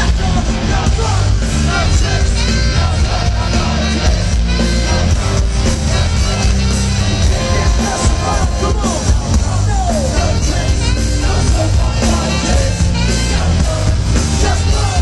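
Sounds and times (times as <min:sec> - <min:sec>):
rap-metal band playing live: 0:00.0 - 0:15.0.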